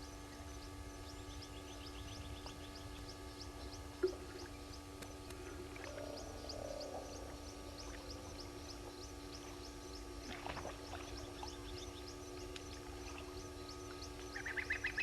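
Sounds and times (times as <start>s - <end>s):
steady hum of tones: 0.0s - 15.0s.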